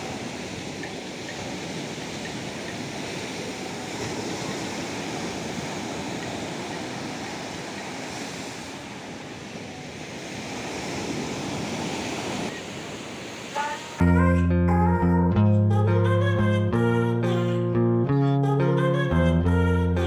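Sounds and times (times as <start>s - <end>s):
sea waves washing onto beach: 0.0s - 14.1s.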